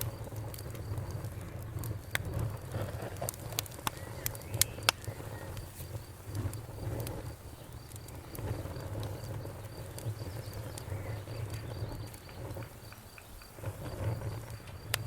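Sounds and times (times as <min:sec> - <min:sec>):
campfire crackling: 0:00.0 - 0:15.0
insect chirping: 0:00.0 - 0:15.0.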